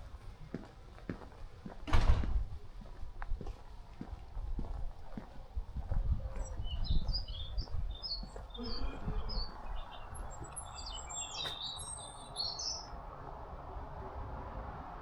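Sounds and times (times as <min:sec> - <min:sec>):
small birds chirping: 0:05.0 - 0:13.0.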